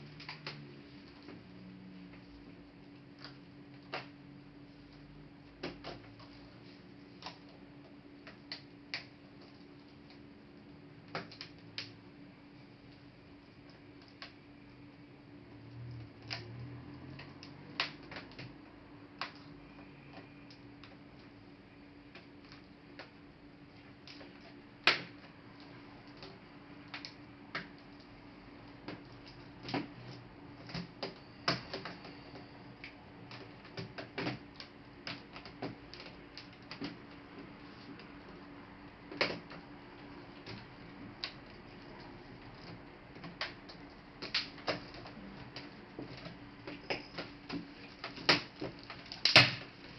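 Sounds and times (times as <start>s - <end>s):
faint steady hum: 0.0s - 49.9s
laptop parts clicking and tapping: 11.0s - 12.0s, 15.6s - 21.3s, 28.8s - 38.5s, 39.1s - 49.9s.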